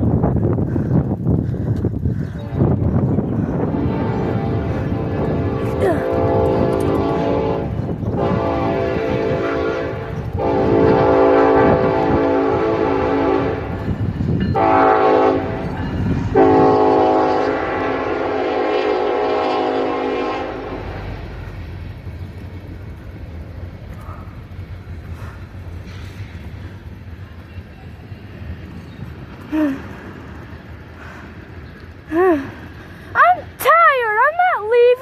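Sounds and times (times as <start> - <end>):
low rumble of passing train: 0.0 - 35.0
train horn blasts: 3.5 - 21.1.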